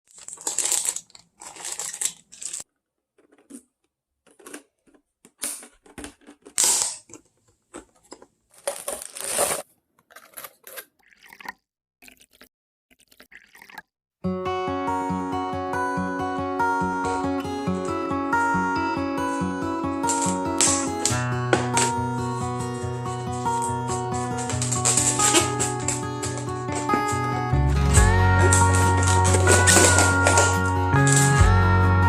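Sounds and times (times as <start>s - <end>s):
plastic crinkling and crackling: 0.0s - 10.9s, 20.0s - 31.4s.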